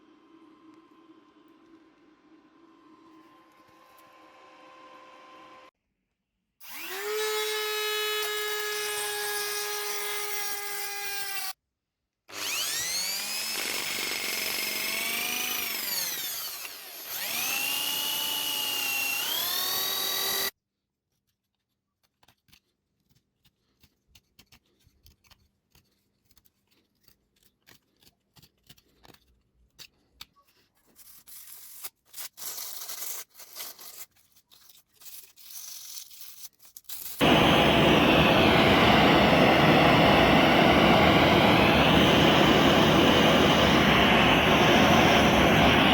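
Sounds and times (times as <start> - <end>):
power tool motor whine: 6.6 - 11.5, 12.3 - 20.5, 37.2 - 45.9.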